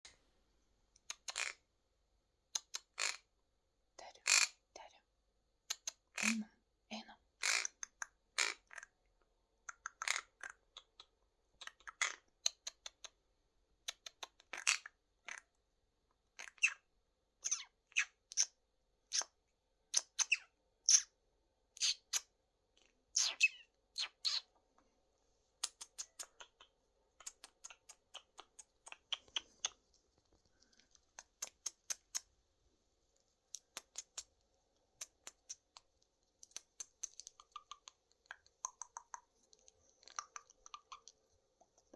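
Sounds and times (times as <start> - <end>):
parakeet chirping and squawking: 1.2 - 1.6, 3.0 - 3.3, 7.4 - 7.8, 16.4 - 16.8, 17.4 - 18.5, 20.0 - 21.1, 23.2 - 24.5.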